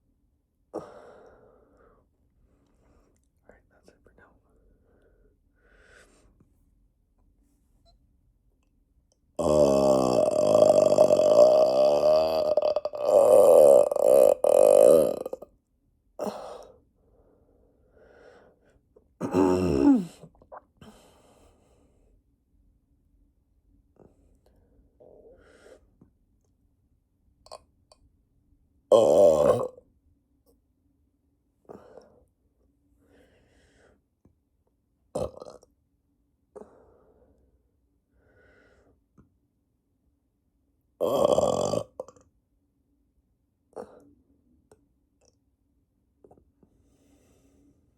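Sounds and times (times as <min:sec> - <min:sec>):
person breathing: 0:00.8 - 0:03.2, 0:04.5 - 0:06.4, 0:16.2 - 0:18.8, 0:33.0 - 0:34.1, 0:36.6 - 0:39.0, 0:46.6 - 0:47.9
person burping: 0:09.4 - 0:15.5, 0:19.2 - 0:20.5, 0:28.9 - 0:29.8, 0:35.2 - 0:35.7, 0:41.0 - 0:42.2.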